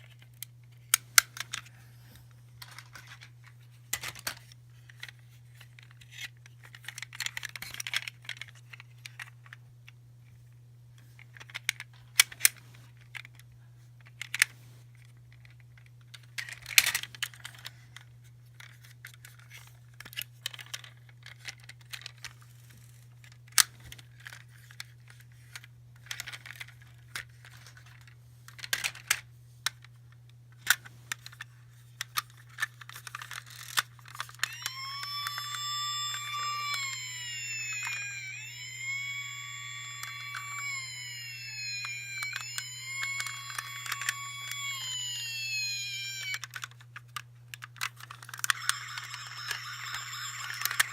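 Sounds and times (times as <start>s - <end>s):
wavering electronic tone: 34.4s - 46.4s, 48.5s - 50.9s.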